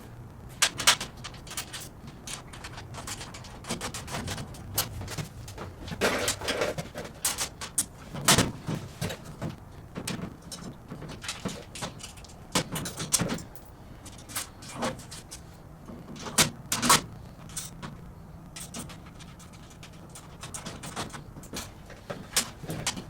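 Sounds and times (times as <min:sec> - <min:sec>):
metal hardware clicking and knocking: 0:00.6 - 0:18.0.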